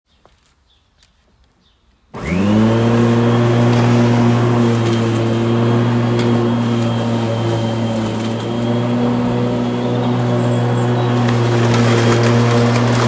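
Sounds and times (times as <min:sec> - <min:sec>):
lawn mower engine starting: 0:02.2 - 0:13.0.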